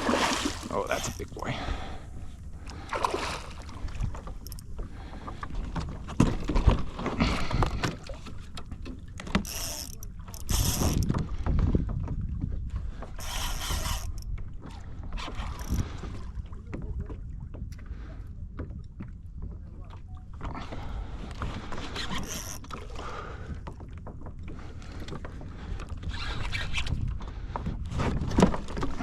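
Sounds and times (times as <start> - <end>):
fishing reel working: 9.4 - 11.1, 13.2 - 14.3, 15.5 - 15.8, 22.1 - 22.7.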